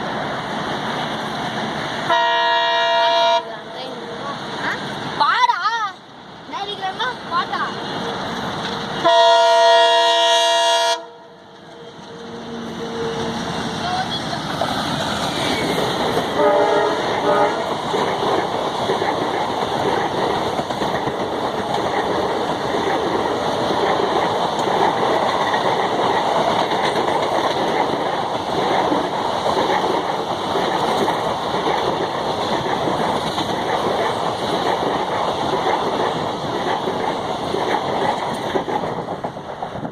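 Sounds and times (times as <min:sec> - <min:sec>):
train horn: 0:02.1 - 0:03.5, 0:09.0 - 0:11.4, 0:16.4 - 0:17.7
train wheels clattering over rails: 0:11.4 - 0:39.9.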